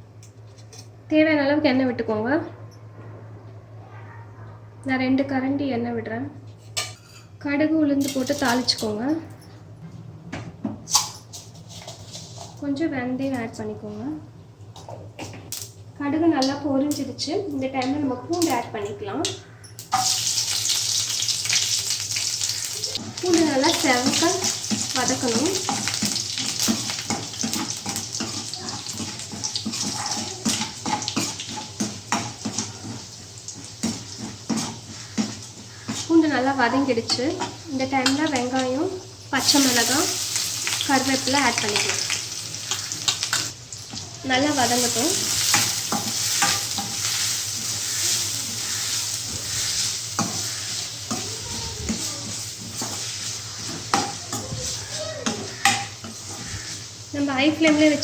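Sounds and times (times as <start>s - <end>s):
ladle scraping pan: 11.4s - 12.6s, 23.7s - 36.2s, 44.6s - 57.0s
garlic sizzling in hot oil: 19.9s - 58.0s.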